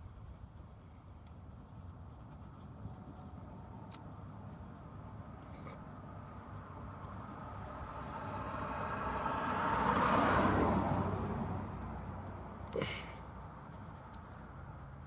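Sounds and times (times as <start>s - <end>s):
vehicle passing: 5.9s - 13.1s.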